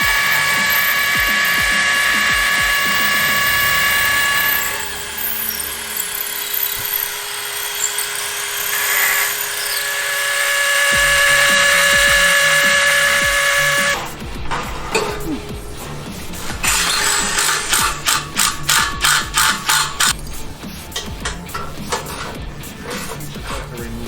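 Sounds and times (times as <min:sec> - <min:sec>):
power drill boring into concrete: 0:00.0 - 0:14.2, 0:16.6 - 0:20.2.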